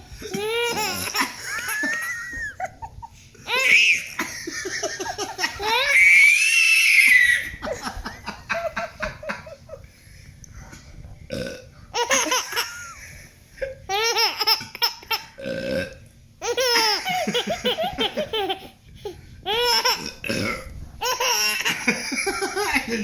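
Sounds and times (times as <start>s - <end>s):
baby laughing: 0.2s - 7.7s, 12.0s - 13.1s, 13.9s - 15.4s, 16.4s - 20.1s, 21.0s - 23.0s
person burping: 11.3s - 11.6s, 15.4s - 16.0s, 20.0s - 20.7s.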